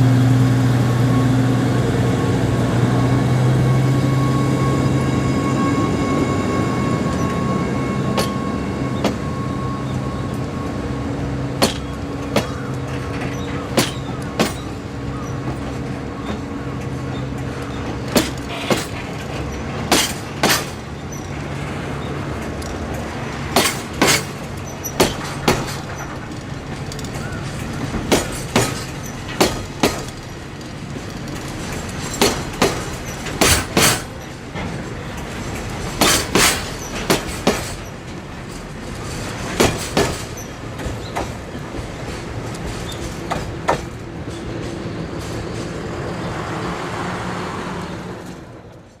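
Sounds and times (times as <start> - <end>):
diesel locomotive engine hum: 0.0 - 49.0
train wheels clacking over rail joint: 8.1 - 9.6, 11.6 - 45.9.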